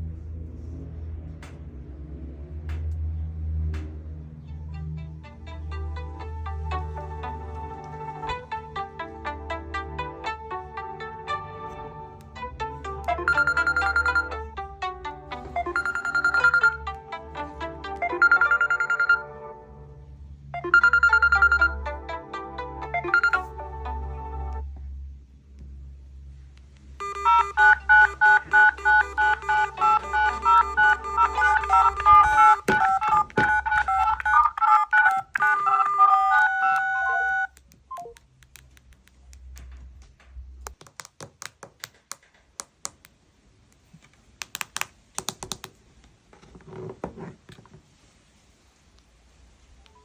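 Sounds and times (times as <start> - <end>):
mobile phone ringtone: 13.0 - 14.5, 15.3 - 19.4, 20.6 - 22.2, 22.8 - 23.6, 27.0 - 37.5
short tones: 27.0 - 38.1
quiet clicks: 37.3 - 46.2.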